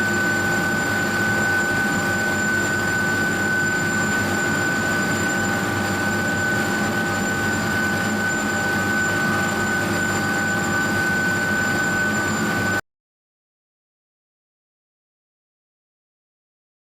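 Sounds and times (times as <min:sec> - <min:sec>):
high-pitched whine: 0:00.0 - 0:12.8.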